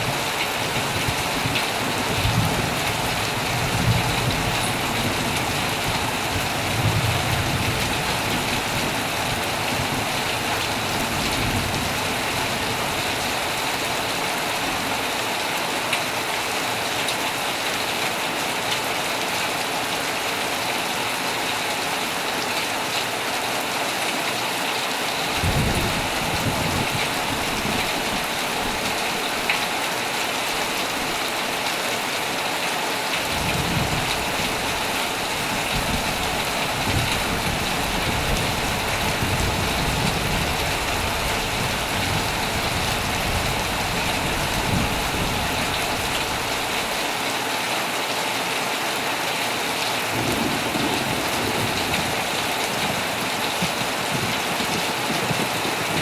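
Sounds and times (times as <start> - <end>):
thunder rumbling: 0.0 - 15.0, 25.3 - 31.6, 33.3 - 47.0, 50.1 - 56.0
heavy rain on a tent: 0.0 - 56.0.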